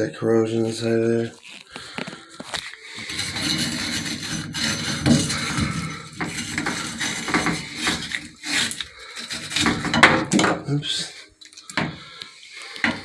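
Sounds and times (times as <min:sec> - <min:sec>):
wire brush scrubbing metal: 0:02.4 - 0:11.0.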